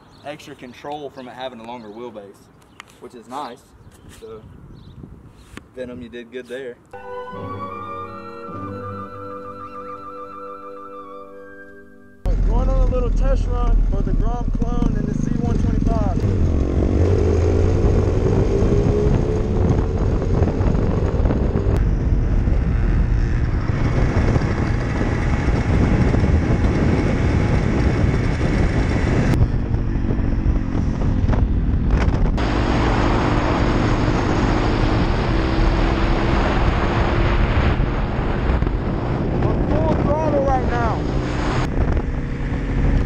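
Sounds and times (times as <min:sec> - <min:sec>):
wind rumble on microphone: 0:03.8 - 0:06.2, 0:12.2 - 0:43.0
motorcycle engine running: 0:12.3 - 0:36.3, 0:38.2 - 0:43.0.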